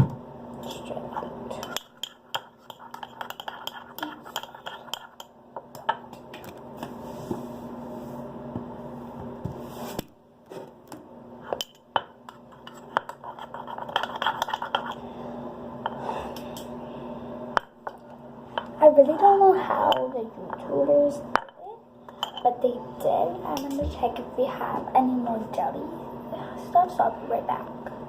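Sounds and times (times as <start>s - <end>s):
utensil scraping a bowl: 1.5s - 5.3s, 12.3s - 15.1s.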